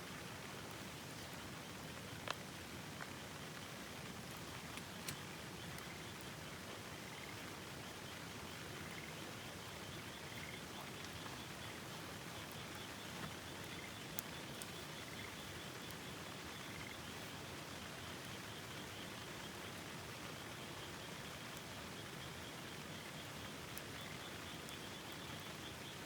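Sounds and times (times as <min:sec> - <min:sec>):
frogs trilling: 0:04.5 - 0:26.0
faint sharp clicks: 0:04.7 - 0:05.9.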